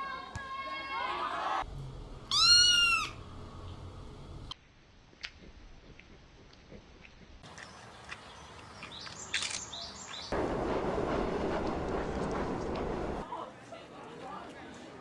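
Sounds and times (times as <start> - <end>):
cat meowing: 2.3 - 3.2.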